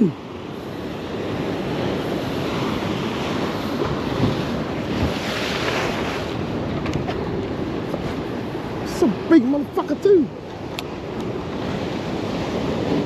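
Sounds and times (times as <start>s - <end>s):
wind rumbling on microphone: 0.0s - 9.3s
ocean waves breaking: 0.0s - 13.0s.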